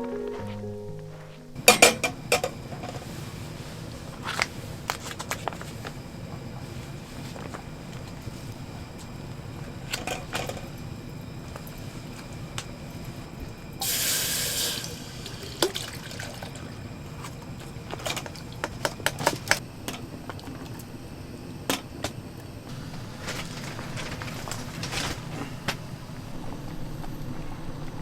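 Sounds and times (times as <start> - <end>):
water pouring: 13.8 - 16.7.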